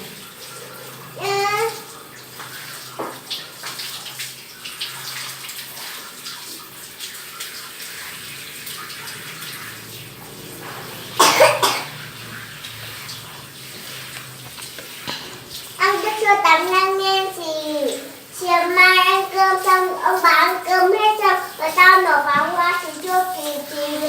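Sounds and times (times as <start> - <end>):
water splashing and trickling: 0.0 - 24.0.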